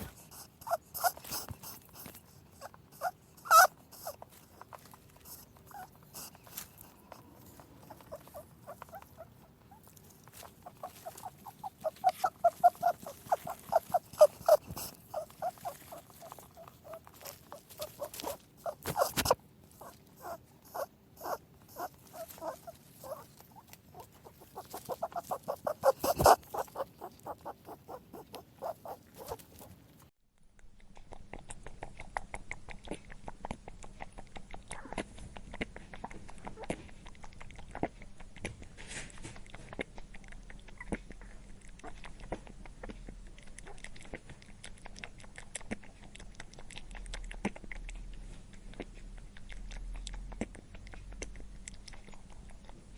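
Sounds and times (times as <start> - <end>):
rabbit clicking: 0.0 - 30.1
rabbit squeaky grunts: 0.0 - 30.1.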